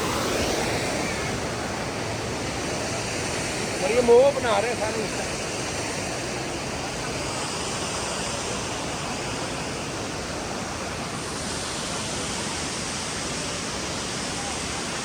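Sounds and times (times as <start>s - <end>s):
waterfall rushing: 0.0s - 7.4s.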